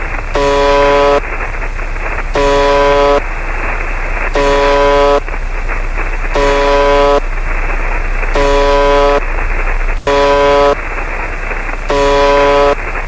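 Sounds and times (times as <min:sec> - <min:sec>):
static hiss: 0:00.0 - 0:13.0
buzzy horn-like alert tone: 0:00.4 - 0:01.2, 0:02.4 - 0:03.2, 0:04.4 - 0:05.2, 0:06.4 - 0:07.2, 0:08.4 - 0:09.2, 0:10.0 - 0:10.8, 0:11.9 - 0:12.8.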